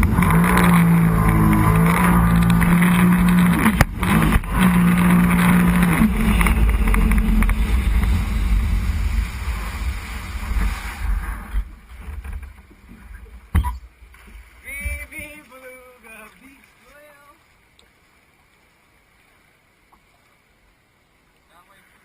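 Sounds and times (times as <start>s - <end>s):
watercraft engine running: 0.0s - 17.4s
wind and water rushing: 0.0s - 22.0s.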